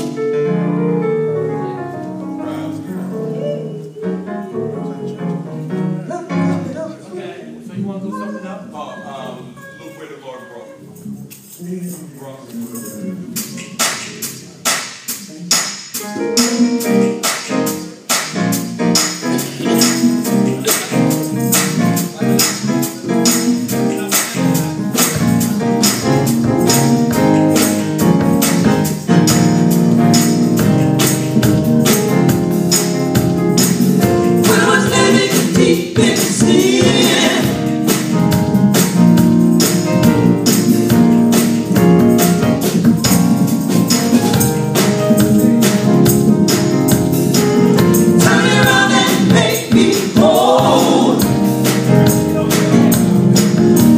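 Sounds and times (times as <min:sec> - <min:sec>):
live band playing: 0:00.0 - 0:11.4, 0:12.6 - 0:53.9
tambourine beat: 0:12.6 - 0:53.9
gospel choir singing: 0:33.6 - 0:38.3, 0:47.6 - 0:52.9.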